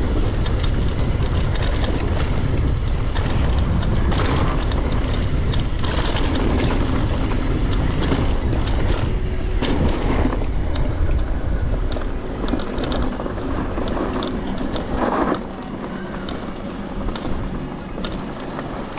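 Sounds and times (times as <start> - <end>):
bike clicking and rattling: 0.0 - 18.9
tyres rumbling on dirt: 0.0 - 18.9
wind on microphone: 0.0 - 18.9.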